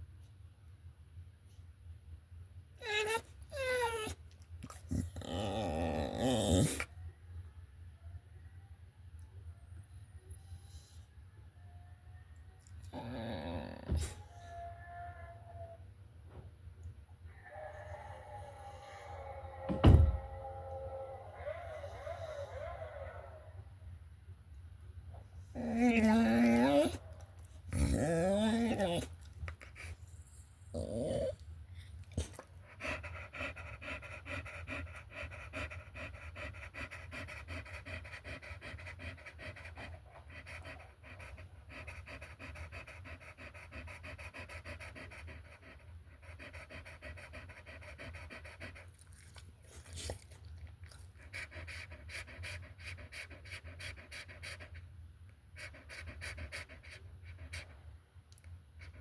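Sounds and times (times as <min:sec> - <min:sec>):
dog whining: 0:02.8 - 0:06.9, 0:12.6 - 0:15.9, 0:17.2 - 0:23.5, 0:25.4 - 0:54.8
dog panting rapidly: 0:32.2 - 0:50.4, 0:51.1 - 0:54.8, 0:55.5 - 0:57.8.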